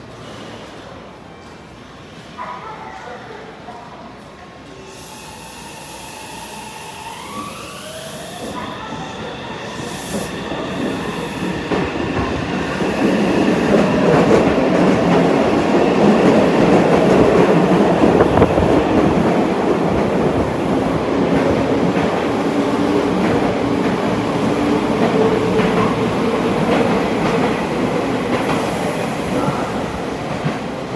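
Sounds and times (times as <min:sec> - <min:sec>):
train running noise: 0:04.2 - 0:30.9
electric train motor whine: 0:05.2 - 0:11.0.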